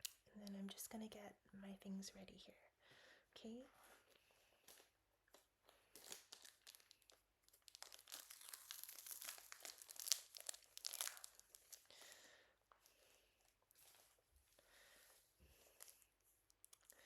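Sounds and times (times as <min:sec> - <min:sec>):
packaging crinkling and rustling: 0:04.6 - 0:12.0.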